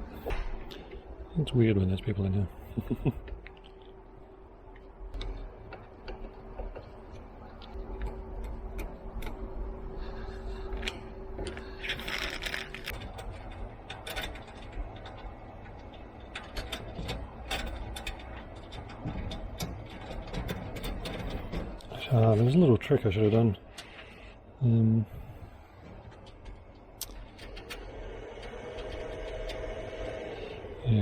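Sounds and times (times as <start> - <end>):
steady hum: 0.0 - 31.0
metal hardware clicking and rattling: 10.8 - 24.2
rustling noise: 11.6 - 13.4.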